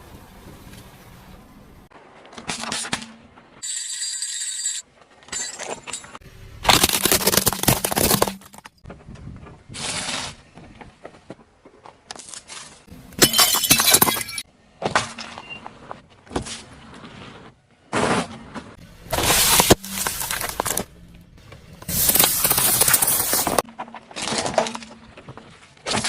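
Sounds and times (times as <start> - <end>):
tyre crushing brittle objects: 6.6 - 8.8, 19.0 - 21.0, 21.8 - 26.0.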